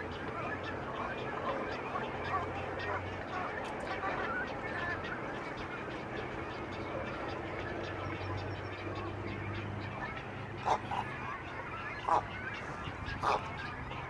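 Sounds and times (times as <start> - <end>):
goose honking: 10.6 - 11.3, 11.9 - 13.6.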